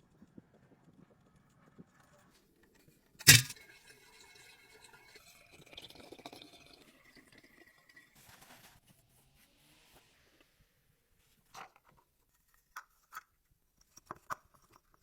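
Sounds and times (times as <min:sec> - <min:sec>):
sharp click or knock: 0:03.3 - 0:03.5.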